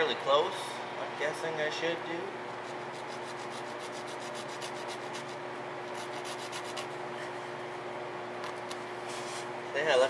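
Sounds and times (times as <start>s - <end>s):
blade sawing through rubber: 2.6s - 7.0s.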